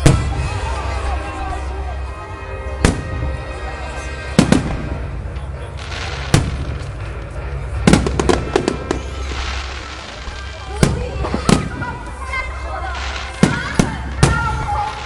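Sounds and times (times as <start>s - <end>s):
background music: 0.0s - 15.0s
crowd voices: 0.0s - 15.0s
fireworks bangs: 2.8s - 3.4s, 4.3s - 5.1s, 5.7s - 15.0s
fireworks crackling hiss: 5.7s - 15.0s.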